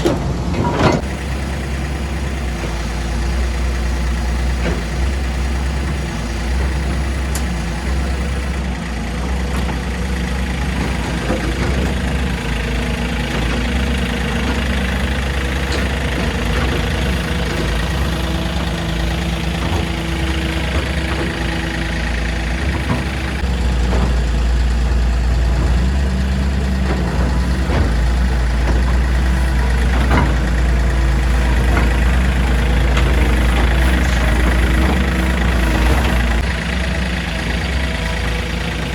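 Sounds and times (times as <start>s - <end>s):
knocks and clunks: 0.0s - 1.3s, 9.4s - 38.9s
heavy machinery engine running: 0.0s - 38.9s.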